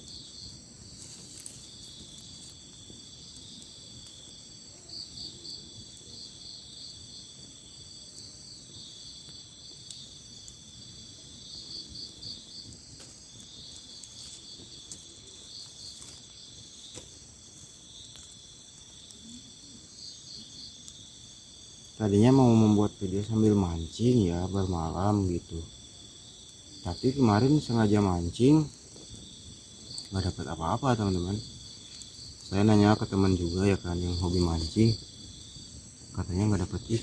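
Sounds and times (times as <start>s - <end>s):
insects trilling: 0.0s - 37.0s
insect pulsing calls: 11.4s - 37.0s.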